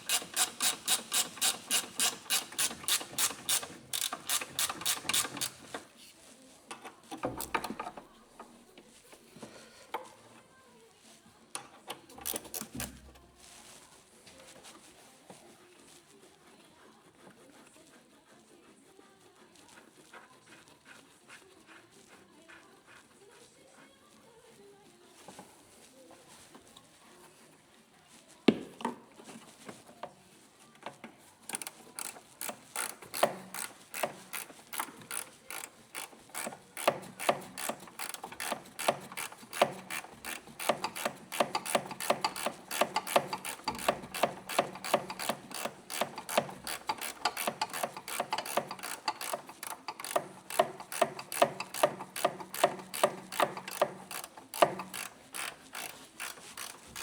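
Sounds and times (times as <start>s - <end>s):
ratchet wrench clicking: 0.0s - 5.8s, 12.2s - 13.0s, 31.5s - 57.0s.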